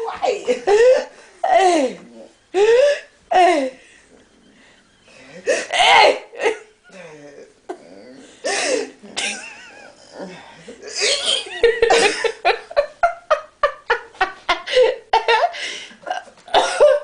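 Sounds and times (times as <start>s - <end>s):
hearty laughter: 8.6s - 17.0s.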